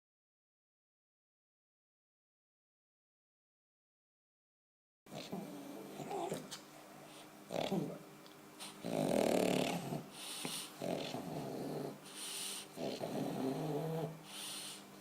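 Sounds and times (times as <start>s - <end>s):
dog snoring: 5.1s - 8.0s, 8.6s - 15.0s.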